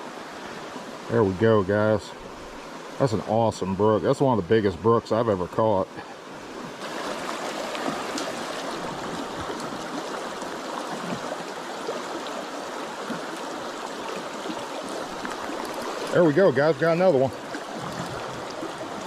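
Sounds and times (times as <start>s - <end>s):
stream water rushing: 0.0s - 19.0s.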